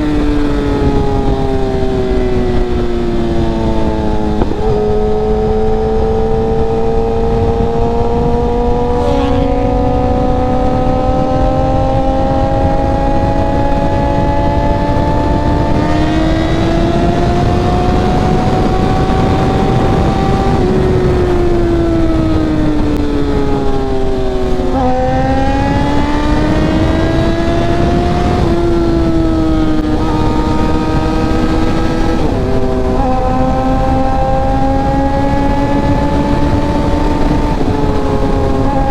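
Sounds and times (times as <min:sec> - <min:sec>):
motorcycle engine revving: 0:00.0 - 0:38.9
wind noise: 0:00.0 - 0:38.9.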